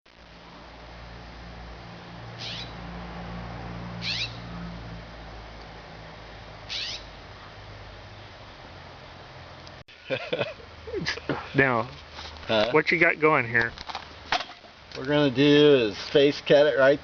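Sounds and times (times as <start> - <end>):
low steady hum: 0.1 - 16.0
animal high downward calls: 2.4 - 2.8, 4.0 - 4.8, 6.7 - 7.1.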